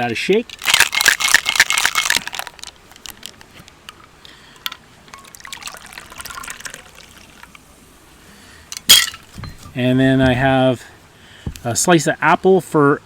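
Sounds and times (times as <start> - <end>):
ice rattling in cocktail shaker: 0.4 - 3.4, 5.1 - 7.6
drink trickling into a glass: 4.6 - 7.6.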